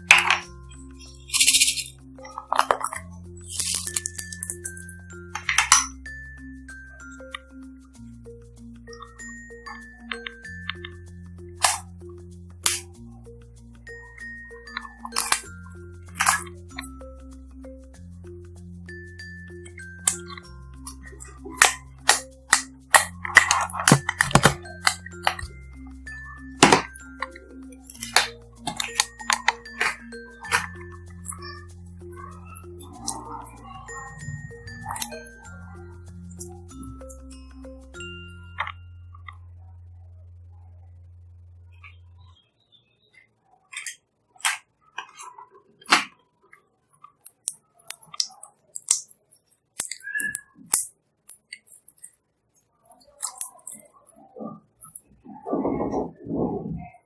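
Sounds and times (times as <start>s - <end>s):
slime squishing with clicks and pops: 0.0s - 6.0s, 9.0s - 12.0s, 12.6s - 13.0s, 14.2s - 17.0s, 19.6s - 26.0s, 26.6s - 36.8s, 38.4s - 39.4s, 43.1s - 55.7s
light background music: 0.0s - 40.6s.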